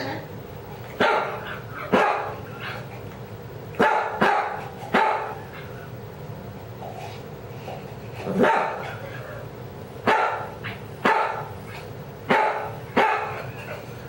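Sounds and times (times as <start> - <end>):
dog barking with rasp: 1.0 - 2.9, 3.8 - 5.7, 8.3 - 9.0, 10.0 - 13.6.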